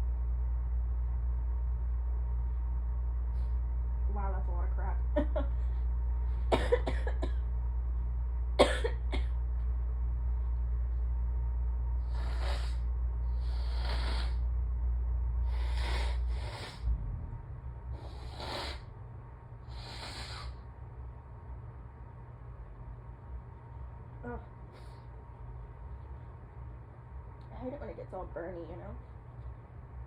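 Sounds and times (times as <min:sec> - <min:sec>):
short cough-like burst: 0:06.5 - 0:07.4, 0:08.6 - 0:09.3
woman sniffing: 0:12.1 - 0:14.4, 0:15.5 - 0:16.9, 0:18.0 - 0:18.9, 0:19.7 - 0:20.6.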